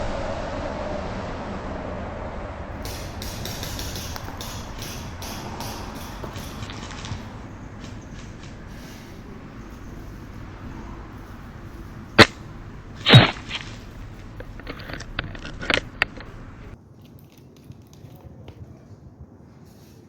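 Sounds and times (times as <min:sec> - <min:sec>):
steady rustling hiss: 0:02.3 - 0:20.0
sharp clacks and knocks: 0:02.8 - 0:16.8.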